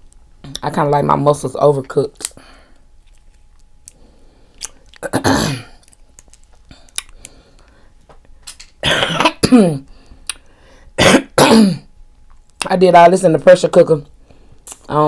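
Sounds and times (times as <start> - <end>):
person coughing: 5.0 - 5.8, 8.8 - 9.9, 11.0 - 11.9.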